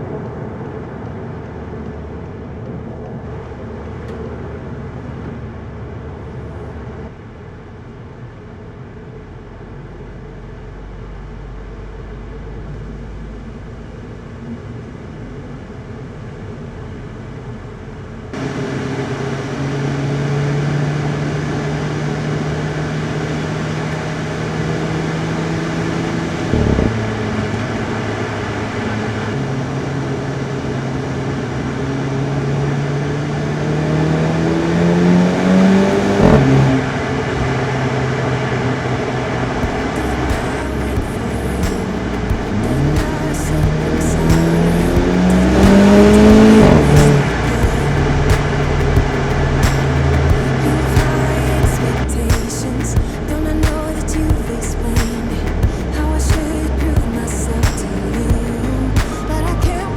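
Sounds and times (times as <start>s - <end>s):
car engine droning: 0.0s - 59.9s
tyre noise: 39.6s - 59.9s.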